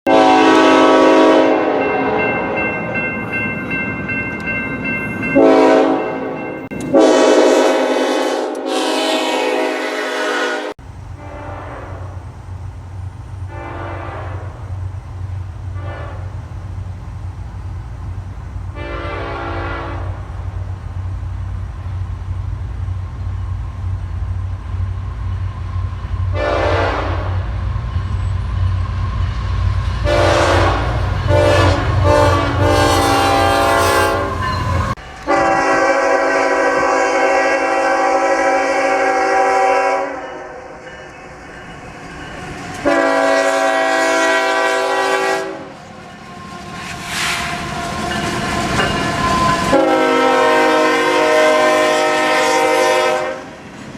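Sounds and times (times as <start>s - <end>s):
locomotive air horn blasts: 0.0s - 2.3s, 5.4s - 12.3s, 13.5s - 14.7s, 15.7s - 16.4s, 18.7s - 20.5s, 26.3s - 27.6s, 30.0s - 40.8s, 42.8s - 45.8s, 49.2s - 53.6s
passing train rumble: 0.0s - 53.9s.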